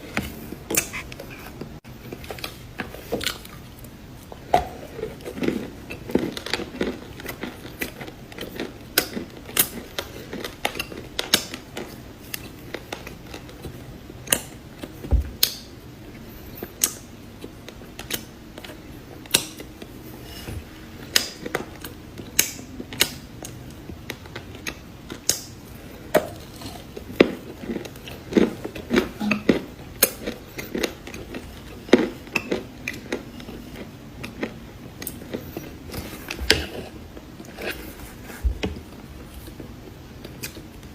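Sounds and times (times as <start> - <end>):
soft chewing: 0.0 - 40.9
cookie crunches: 4.8 - 20.0.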